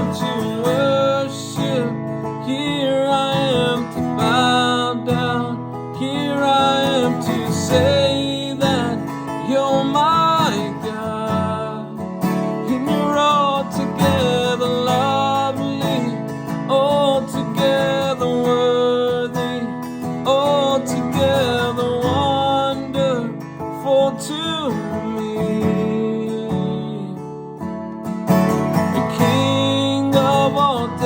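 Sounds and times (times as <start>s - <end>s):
acoustic guitar strumming chords: 0.0s - 31.0s.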